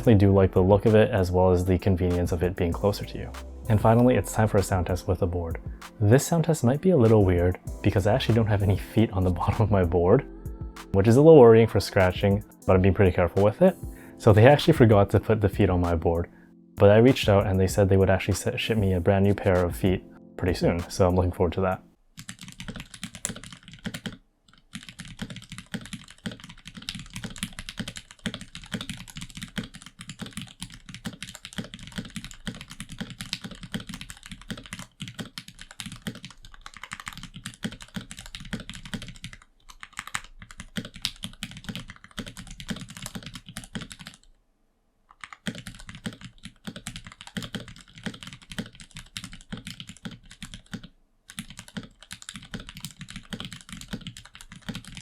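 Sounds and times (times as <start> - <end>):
mechanical keyboard typing: 22.2 - 44.3, 45.1 - 55.0.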